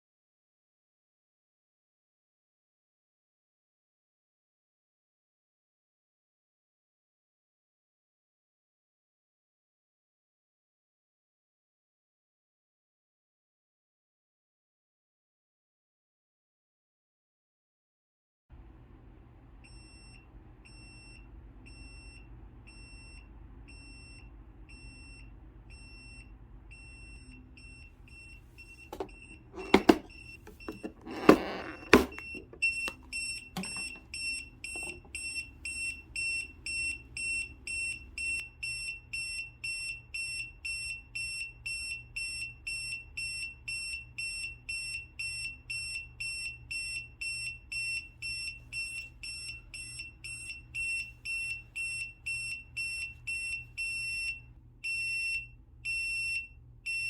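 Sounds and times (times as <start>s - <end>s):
high piercing alarm beeps: 19.7s - 57.0s.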